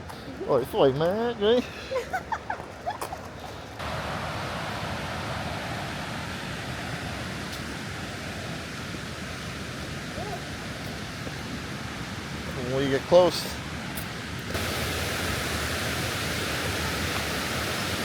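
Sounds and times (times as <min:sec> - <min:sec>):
waterfall rushing: 0:03.8 - 0:18.0.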